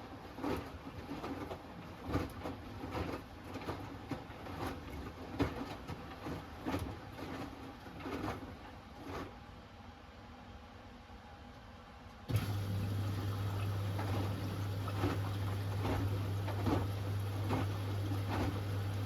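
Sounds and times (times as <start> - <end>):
washing machine drum tumbling: 12.3 - 19.0.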